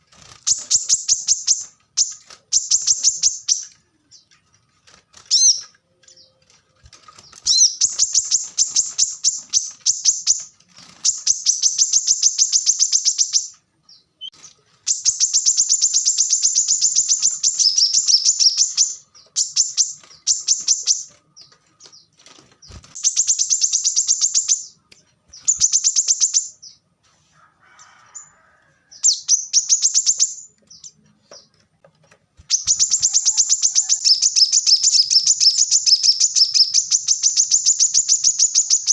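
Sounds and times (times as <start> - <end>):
bird singing high trills: 32.5 - 38.9.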